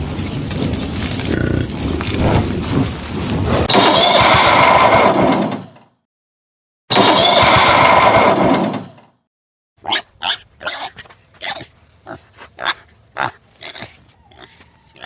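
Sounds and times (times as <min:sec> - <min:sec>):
loud rough noise: 0:00.1 - 0:05.8, 0:06.9 - 0:09.2.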